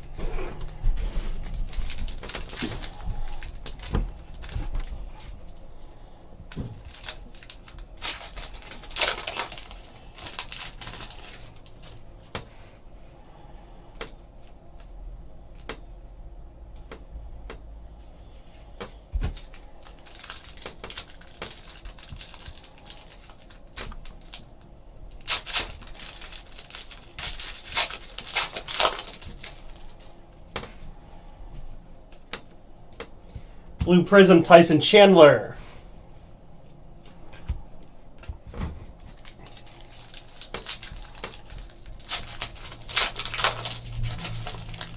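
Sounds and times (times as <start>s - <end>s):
wrappers rustling: 0.0s - 12.8s, 18.6s - 33.2s, 36.5s - 44.9s.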